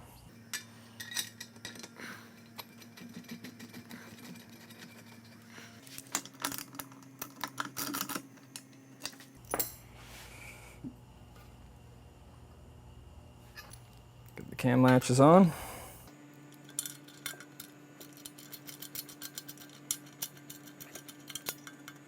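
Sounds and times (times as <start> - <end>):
faint steady hum: 0.0 - 22.0
metal hardware clicking and clinking: 0.5 - 2.0, 6.0 - 9.8, 16.6 - 22.0.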